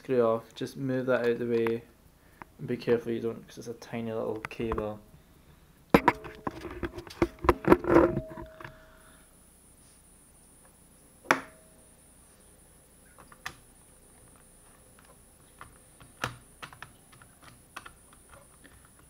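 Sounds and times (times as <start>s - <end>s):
tiny screws tapping plastic: 14.3s - 19.0s.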